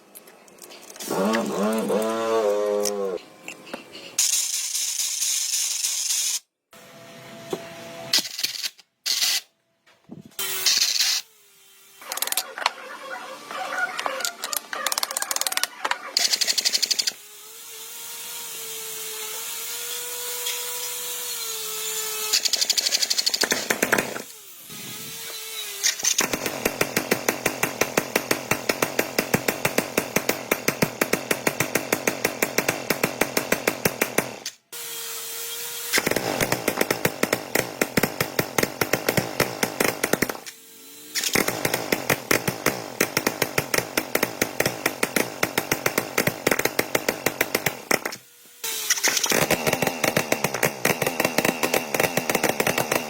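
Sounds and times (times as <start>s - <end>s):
power tool working metal: 1.0s - 3.2s, 16.1s - 53.0s.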